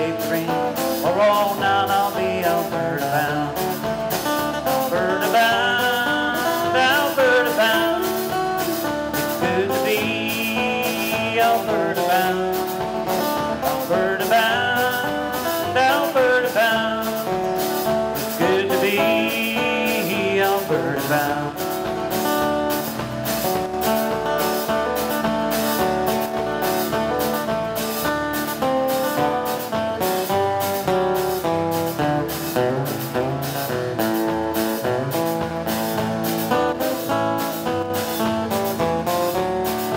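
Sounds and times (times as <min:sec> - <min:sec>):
country band music: 0:00.0 - 0:39.9.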